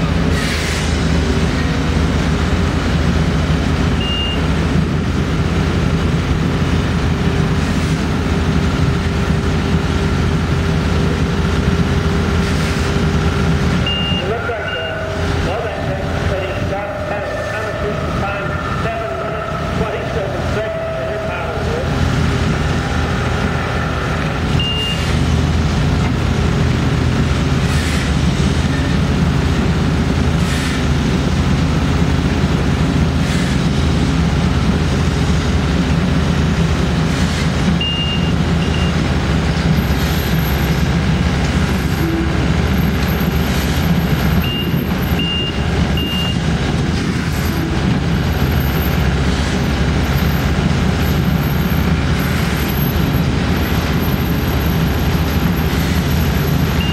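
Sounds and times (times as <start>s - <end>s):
heavy machinery engines running: 0.0s - 56.9s
reversing alarm beeps: 4.0s - 4.5s, 13.8s - 15.2s, 24.6s - 25.1s, 37.8s - 39.0s, 44.4s - 46.5s.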